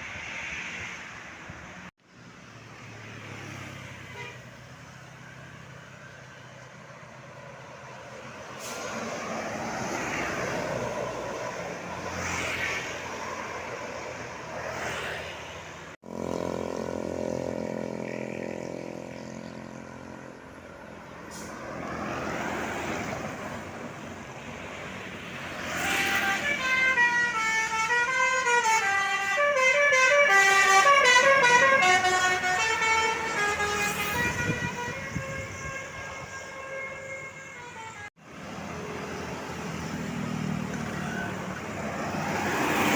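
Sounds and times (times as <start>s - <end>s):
vehicle engine and road traffic: 0.0s - 42.9s
vehicle passing by: 2.2s - 27.2s, 38.2s - 42.9s
bus musical horn warbling tune: 4.1s - 4.5s, 25.8s - 38.2s.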